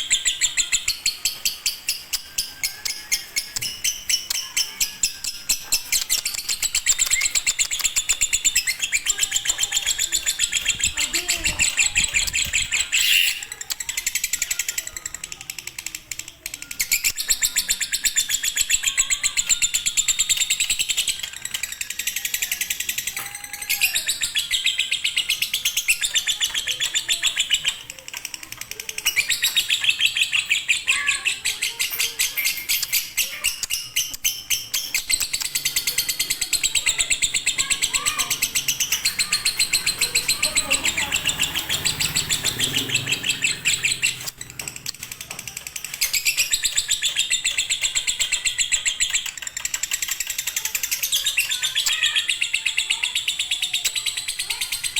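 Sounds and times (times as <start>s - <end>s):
lovebird chattering trill: 0.0s - 15.6s, 16.3s - 45.0s.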